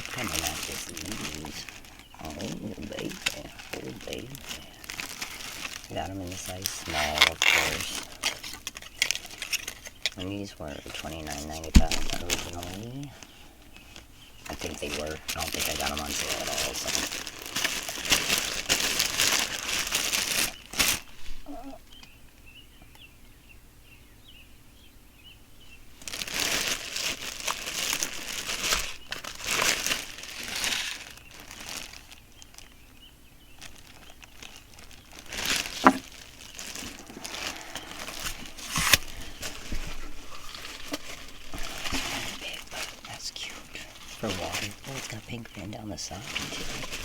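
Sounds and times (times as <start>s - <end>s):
packaging crinkling: 0.0s - 22.1s, 26.0s - 32.9s, 33.5s - 47.0s.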